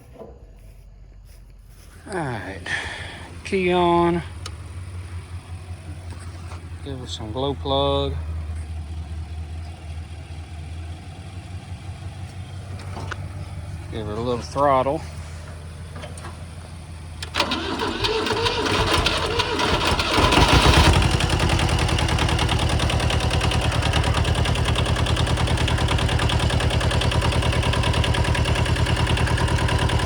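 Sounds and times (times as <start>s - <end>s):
diesel engine idling: 0.6s - 30.0s
starter motor cranking: 17.2s - 30.0s.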